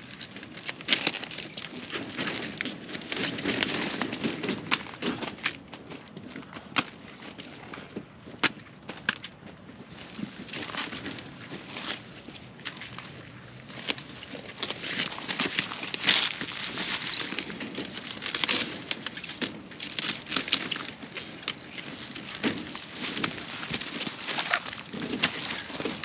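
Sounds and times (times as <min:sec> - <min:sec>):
leaves rustling and crunching: 0:00.0 - 0:05.5, 0:10.1 - 0:26.0
stiff leaves snapping: 0:00.0 - 0:07.0, 0:13.7 - 0:26.0.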